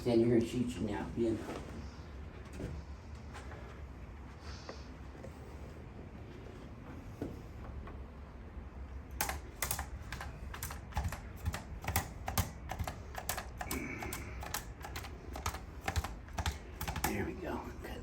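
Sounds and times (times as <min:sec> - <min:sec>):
quick sharp clicks and taps: 0:09.2 - 0:17.2.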